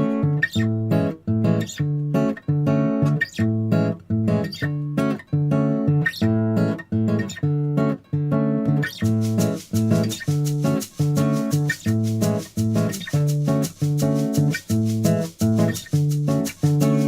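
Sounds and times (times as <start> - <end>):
acoustic guitar strumming chords: 0.0 - 17.0.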